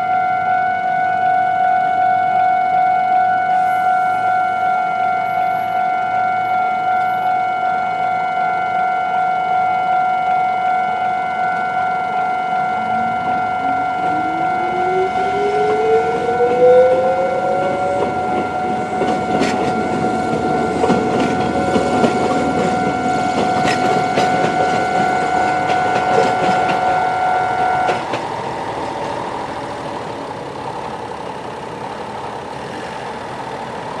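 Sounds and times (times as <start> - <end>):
level crossing alarm ringing: 0.0 - 32.6
train motor whine: 1.4 - 34.0
road vehicle engines running: 11.3 - 34.0
train wheels clicking: 14.1 - 34.0.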